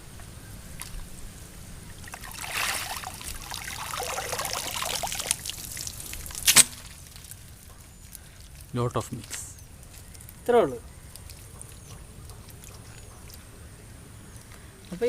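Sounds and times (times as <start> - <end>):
water dripping off a net: 1.9 - 8.8.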